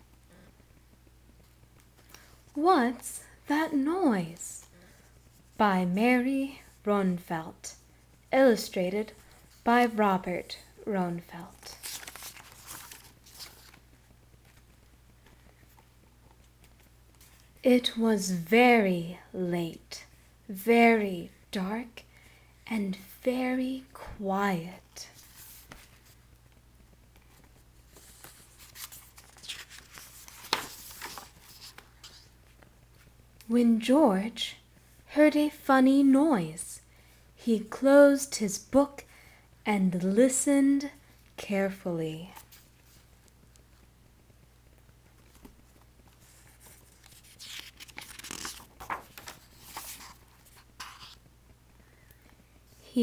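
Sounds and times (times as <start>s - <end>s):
paper rustling: 11.4s - 17.5s, 27.2s - 33.1s, 44.8s - 51.3s.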